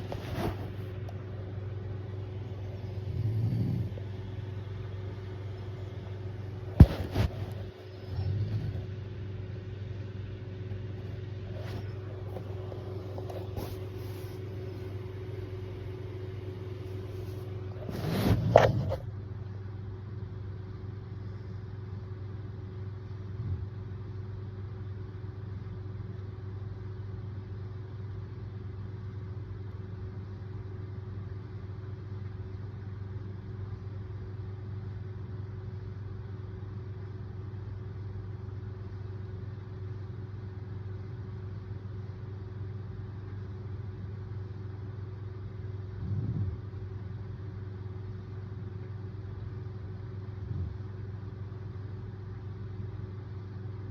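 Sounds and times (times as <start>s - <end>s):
low hum: 0.0s - 24.2s, 44.7s - 53.9s.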